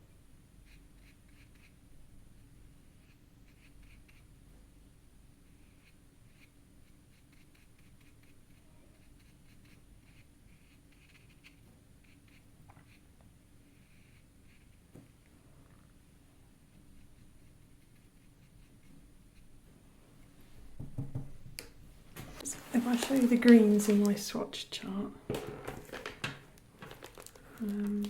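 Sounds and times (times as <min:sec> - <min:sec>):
faint steady hum: 0:00.0 - 0:28.0
scratching strokes on paper: 0:00.6 - 0:01.8, 0:02.8 - 0:04.3, 0:05.5 - 0:14.9, 0:16.7 - 0:19.5.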